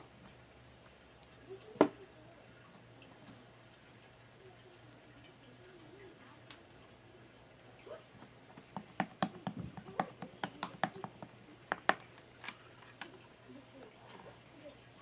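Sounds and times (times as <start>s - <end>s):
slime clicking and popping: 8.8s - 12.0s.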